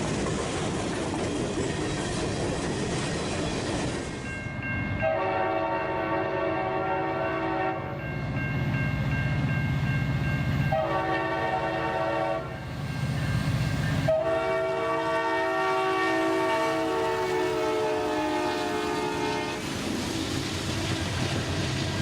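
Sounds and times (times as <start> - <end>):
train rumbling: 0.0 - 22.0
locomotive air horn chord: 5.0 - 8.1, 10.7 - 12.6, 14.1 - 19.6.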